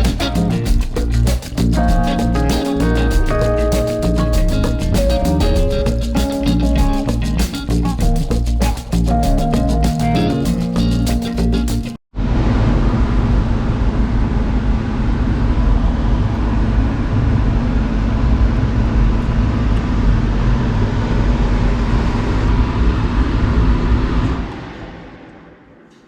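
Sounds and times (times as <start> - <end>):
motor vehicle rumble: 0.0 - 12.0.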